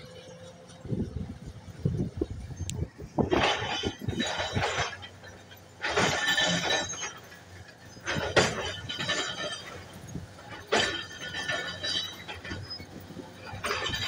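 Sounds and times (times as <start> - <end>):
faint engine hum: 0.0 - 6.0
bulldozer crunching and clanking: 0.0 - 14.0.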